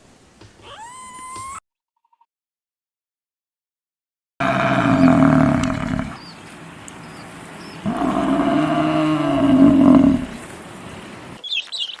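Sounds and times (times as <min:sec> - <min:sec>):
large animal long call: 0:04.4 - 0:06.2, 0:07.8 - 0:10.5.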